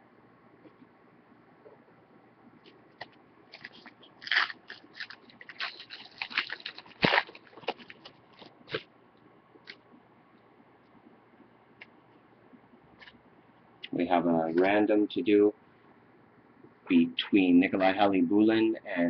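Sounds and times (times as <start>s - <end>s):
foil wrapper crinkling and tearing: 3.5s - 8.8s.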